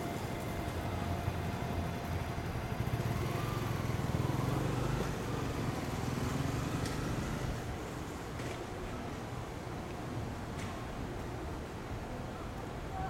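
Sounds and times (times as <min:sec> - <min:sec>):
vehicle engines running: 0:00.0 - 0:07.8.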